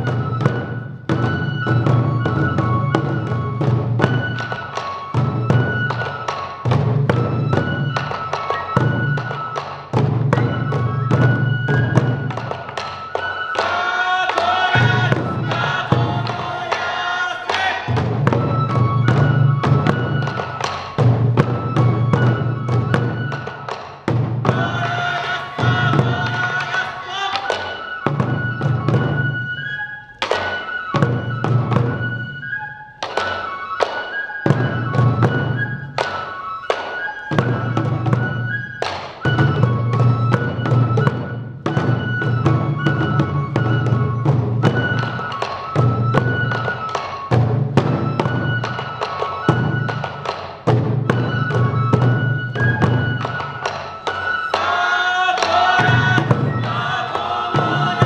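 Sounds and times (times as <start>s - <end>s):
bamboo flute high notes: 0.0s - 58.0s
taiko drums beating: 0.0s - 58.0s
group of voices chanting: 13.6s - 18.0s, 24.5s - 27.7s, 54.5s - 58.0s.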